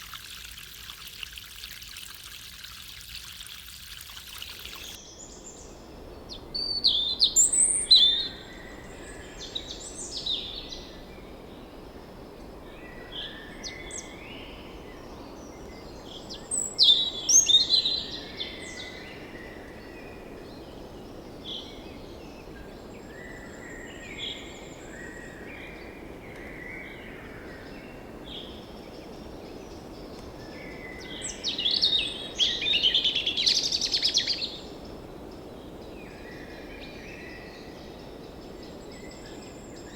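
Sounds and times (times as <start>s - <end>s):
steady low hiss: 4.9s - 39.9s.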